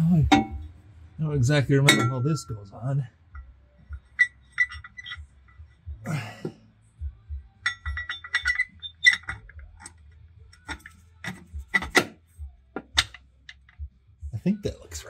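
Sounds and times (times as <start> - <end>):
metallic clinks of tools and bolts: 3.4 - 5.7, 7.6 - 12.2, 12.8 - 13.8.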